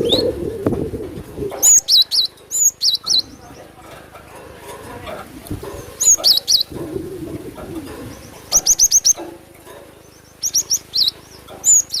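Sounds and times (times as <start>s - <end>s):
bird chirping high sharp notes: 10.1s - 12.0s.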